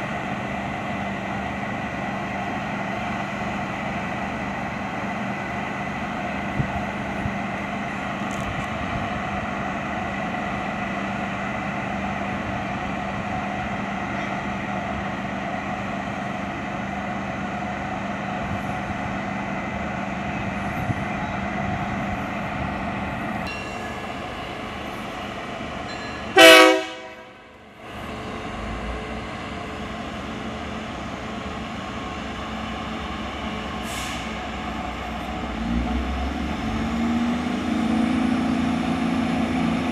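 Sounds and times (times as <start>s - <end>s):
diesel locomotive engine hum: 0.0s - 39.9s
train horn blast: 26.3s - 27.5s.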